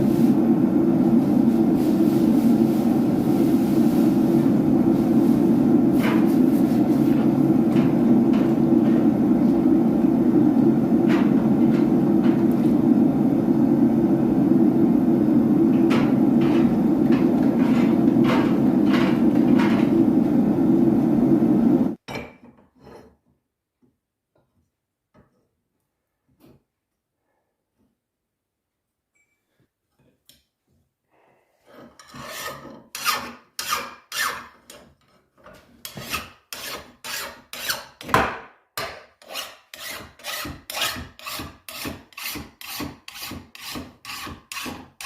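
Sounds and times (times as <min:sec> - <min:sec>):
forge roaring: 0:06.8 - 0:22.0.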